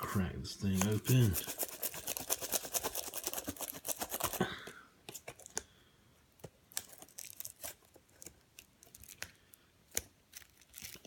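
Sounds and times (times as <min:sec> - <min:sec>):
plastic wrap crinkling: 0:00.7 - 0:04.4, 0:06.6 - 0:09.6, 0:10.3 - 0:11.0.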